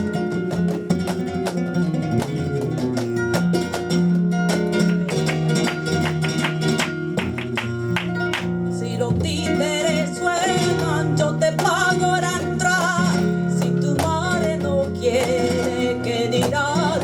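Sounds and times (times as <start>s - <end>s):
flamenco guitar playing: 0.0s - 17.0s
person singing: 8.8s - 17.0s.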